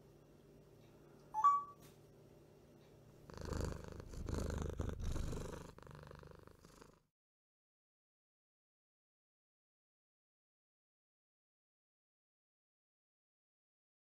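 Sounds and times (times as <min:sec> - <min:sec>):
parrot rough pulsing noise: 0:03.3 - 0:07.0.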